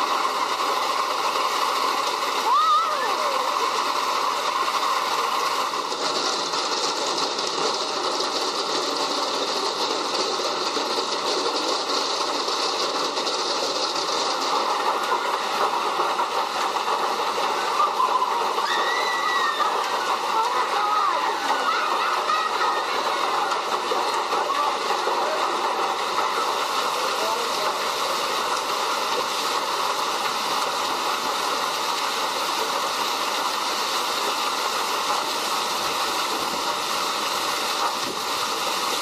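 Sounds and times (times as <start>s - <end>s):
hail and rain pelting: 0.0s - 39.0s
faint voices: 17.6s - 28.2s.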